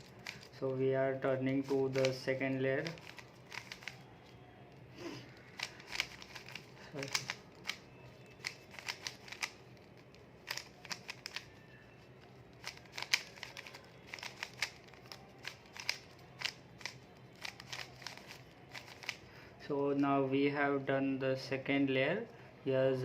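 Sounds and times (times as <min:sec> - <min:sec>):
puzzle cube clicking: 0:00.0 - 0:00.5, 0:01.6 - 0:04.0, 0:05.4 - 0:11.5, 0:12.5 - 0:19.2.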